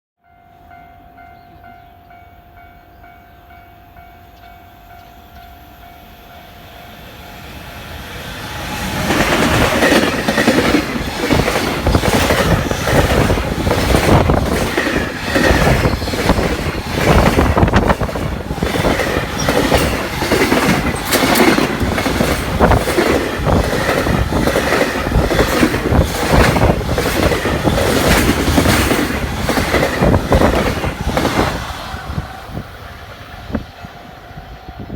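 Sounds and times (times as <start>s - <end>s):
level crossing warning bell: 0.2s - 7.6s
freight train passing: 0.2s - 34.9s
wheels clattering over rail joints: 8.8s - 31.5s.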